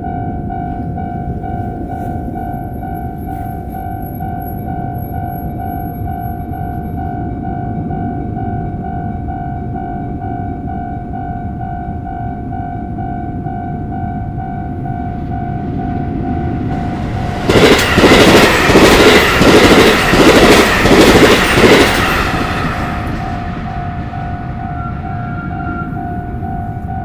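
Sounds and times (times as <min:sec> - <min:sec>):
level-crossing warning bell: 0:00.0 - 0:27.0
train wheels clattering: 0:14.6 - 0:27.0.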